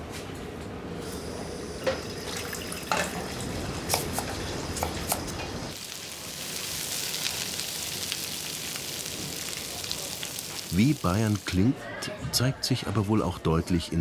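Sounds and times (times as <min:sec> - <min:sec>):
pots and pans clinking: 0:01.8 - 0:05.6
food sizzling in a hot pan: 0:03.4 - 0:11.6.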